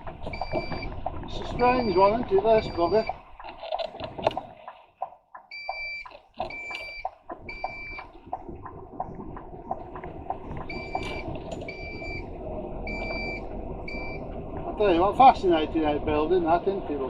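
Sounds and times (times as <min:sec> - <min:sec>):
lorry engine rumble: 0:00.0 - 0:03.1, 0:10.5 - 0:17.0
high electronic beeps: 0:00.3 - 0:00.9, 0:01.5 - 0:03.2, 0:05.5 - 0:08.1, 0:10.7 - 0:12.3, 0:12.9 - 0:14.2
soft regular clicks: 0:02.6 - 0:14.8.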